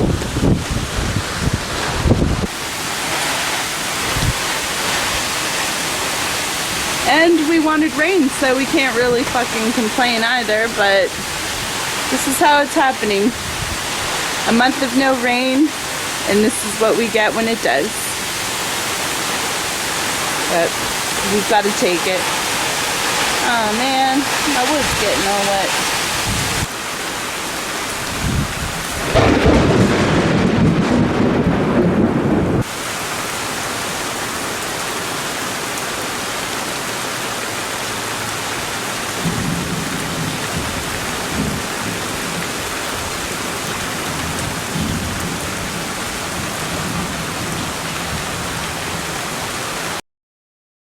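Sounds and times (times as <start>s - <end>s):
thunder rumbling: 0.0s - 15.8s, 28.0s - 32.9s, 39.0s - 49.1s
heavy rain pouring: 0.0s - 50.0s.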